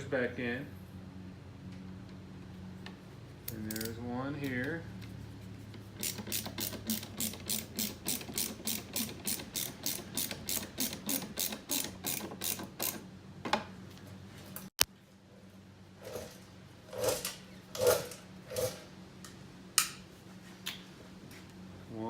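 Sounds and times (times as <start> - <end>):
ratcheting driver clicking: 6.0 - 13.0.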